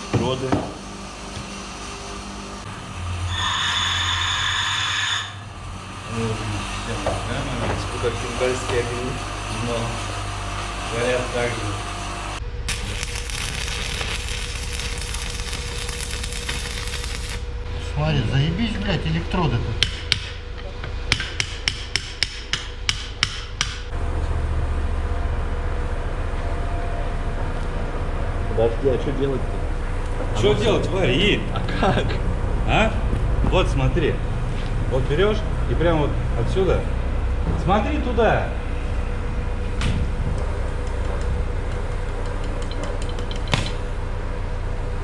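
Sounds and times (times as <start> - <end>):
steady low hum: 0.0 - 45.0
welding arc ticks and crackles: 12.7 - 17.5, 40.4 - 43.8.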